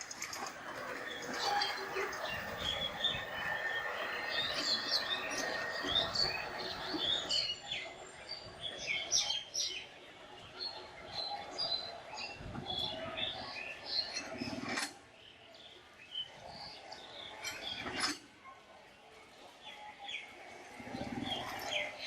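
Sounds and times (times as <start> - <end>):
small birds chirping: 0.0 - 14.6.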